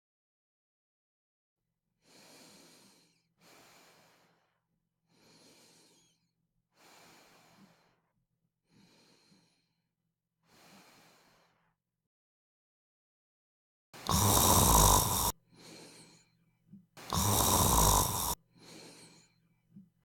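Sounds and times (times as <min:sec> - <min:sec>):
person snoring breathing: 0:05.1 - 0:06.2, 0:14.0 - 0:16.3, 0:17.0 - 0:19.3.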